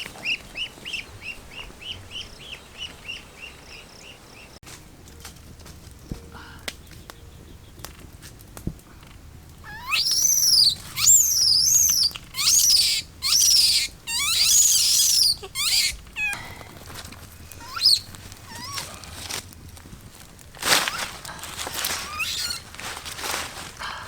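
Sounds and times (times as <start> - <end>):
bird squawking: 9.6 - 16.6, 17.4 - 19.2, 20.9 - 22.7.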